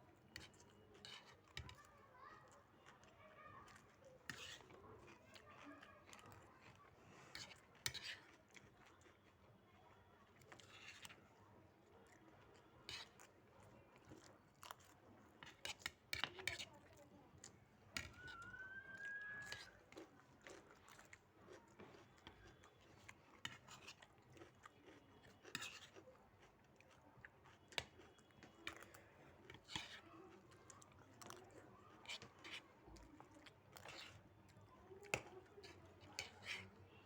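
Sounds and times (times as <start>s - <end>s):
person chewing food: 6.1s - 9.4s, 12.0s - 16.0s, 19.4s - 36.7s.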